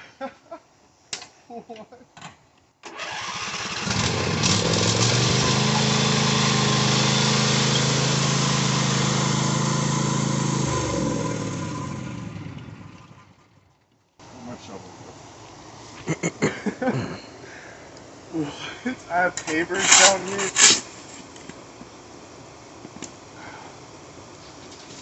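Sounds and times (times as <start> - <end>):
tractor engine running: 2.9 - 13.9.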